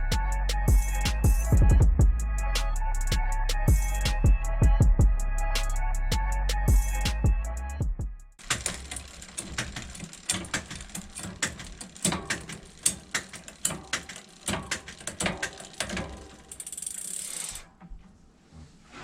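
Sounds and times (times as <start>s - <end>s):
bicycle hub ratcheting: 8.4s - 17.8s.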